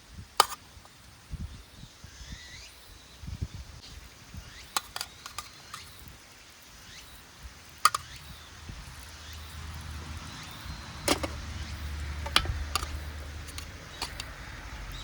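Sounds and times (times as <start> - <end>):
faint outdoor background: 0.0 - 15.0
thin high chirps: 6.8 - 14.3.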